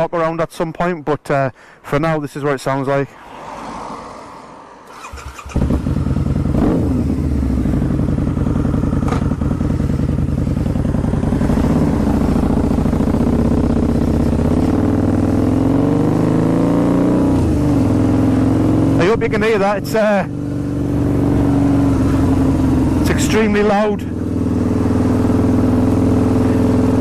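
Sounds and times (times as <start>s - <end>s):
motorcycle engine deep exhaust: 5.0s - 27.0s.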